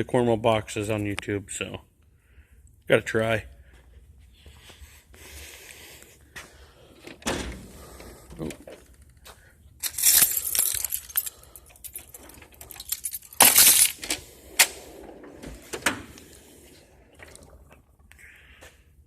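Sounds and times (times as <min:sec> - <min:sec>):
tools clinking and rattling: 0:09.8 - 0:15.9
tool box drawers sliding: 0:12.1 - 0:17.2.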